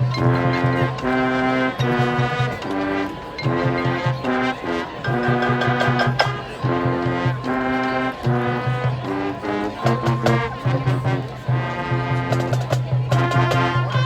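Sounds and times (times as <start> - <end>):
marching band playing: 0.0 - 14.0
sharp percussion hits: 5.1 - 6.6.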